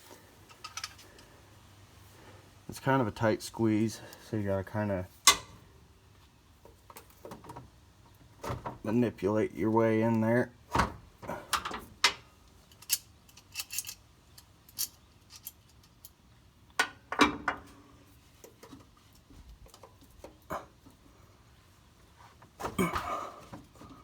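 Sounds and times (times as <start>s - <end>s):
wrench clicking and clanking on metal: 12.7s - 16.1s.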